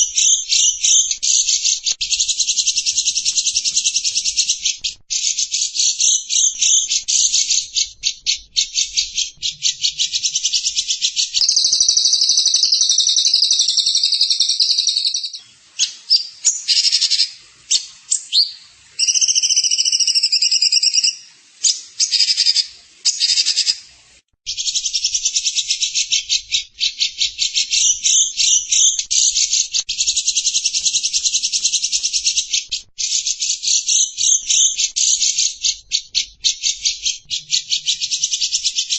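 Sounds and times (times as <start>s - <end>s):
songbird trilling: 0.0s - 23.8s
bird whistled notes: 11.3s - 23.8s.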